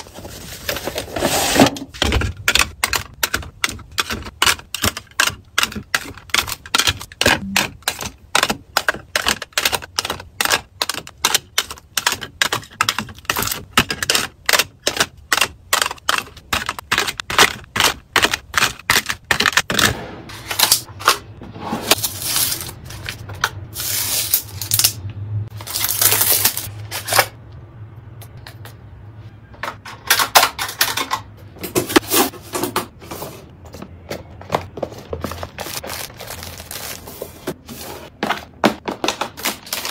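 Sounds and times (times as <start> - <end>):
rustling and scraping handling: 0.0 - 2.0, 20.3 - 24.9, 30.6 - 39.9.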